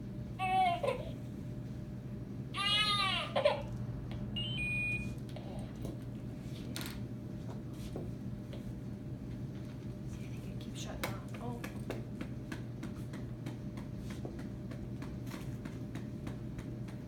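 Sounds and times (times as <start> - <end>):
baby crying: 2.6 - 3.7
brief electronic beep: 4.4 - 5.2.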